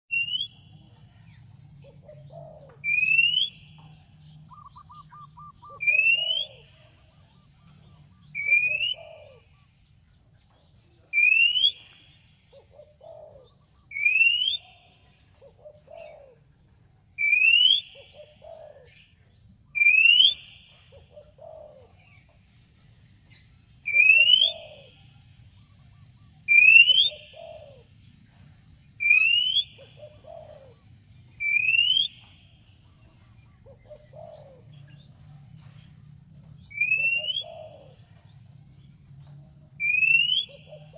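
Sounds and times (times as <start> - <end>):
bird whistled call: 0.1 - 0.8, 2.4 - 3.9, 4.5 - 9.5, 11.2 - 13.2, 13.8 - 14.8, 17.2 - 18.8, 19.7 - 21.8, 23.8 - 25.1, 25.7 - 27.7, 29.0 - 30.8, 31.4 - 32.8, 36.7 - 38.1, 39.8 - 40.9.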